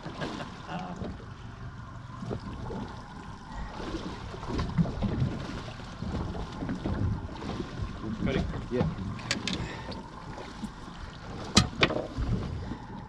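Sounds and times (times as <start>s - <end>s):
low uneven rumble: 0.0s - 13.0s
water lapping against boat hull: 0.0s - 13.0s
light knocks on hull: 11.4s - 12.3s.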